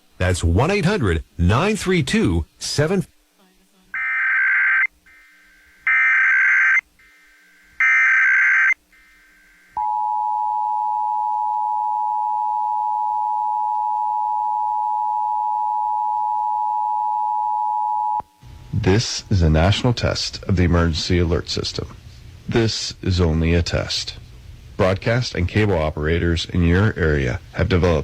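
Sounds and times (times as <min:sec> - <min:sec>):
digital data tone bursts: 0:04.0 - 0:09.9.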